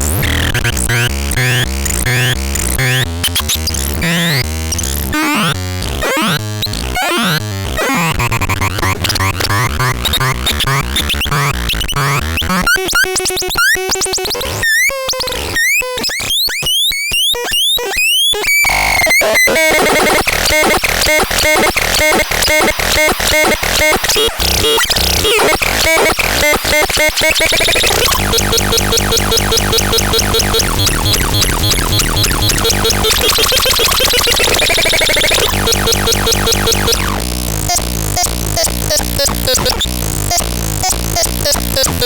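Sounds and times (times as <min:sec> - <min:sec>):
glitchy synthesizer noise: 0:00.0 - 0:06.4, 0:07.0 - 0:14.2, 0:17.3 - 0:42.0
fast even electronic pulsing: 0:18.6 - 0:42.0
synth pitch sweeps: 0:24.6 - 0:37.3.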